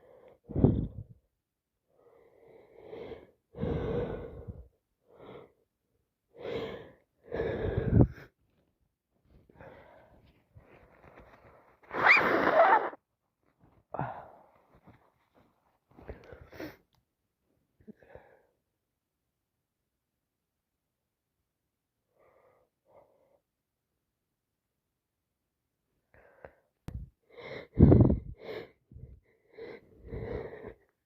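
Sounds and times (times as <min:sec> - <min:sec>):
gasping in-breaths: 0:02.0 - 0:05.6, 0:06.4 - 0:08.4, 0:13.9 - 0:14.8, 0:26.1 - 0:31.0
person sneezing: 0:11.9 - 0:13.0.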